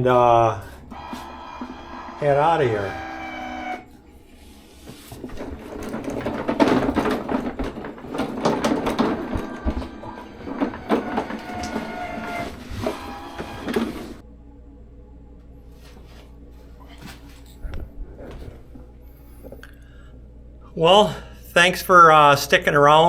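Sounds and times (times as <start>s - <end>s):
cart wheels squeaking: 0.0s - 14.2s
carts rattling and knocking: 0.0s - 14.2s.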